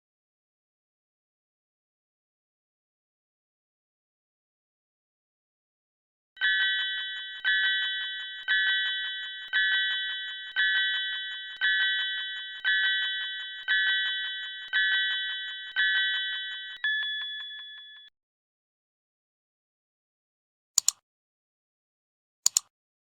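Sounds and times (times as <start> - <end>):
electronic countdown chime: 6.4 - 18.1
fast ticks: 20.8 - 21.0, 22.5 - 22.7.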